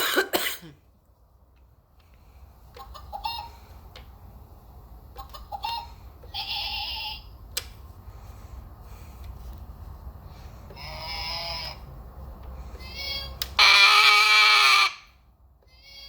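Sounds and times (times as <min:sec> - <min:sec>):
toy chicken clucking: 0:02.7 - 0:03.7, 0:05.0 - 0:07.4, 0:10.7 - 0:11.9, 0:12.7 - 0:16.0
harsh squawk: 0:13.6 - 0:15.2.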